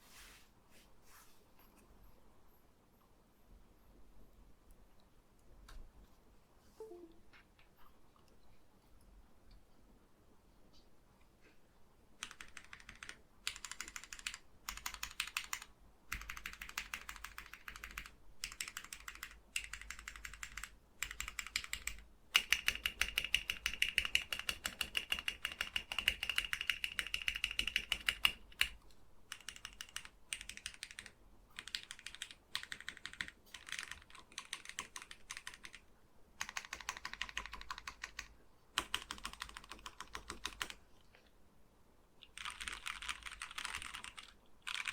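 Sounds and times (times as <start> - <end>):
mechanical keyboard keys clacking: 12.2 - 35.8, 36.4 - 40.8, 42.3 - 44.9.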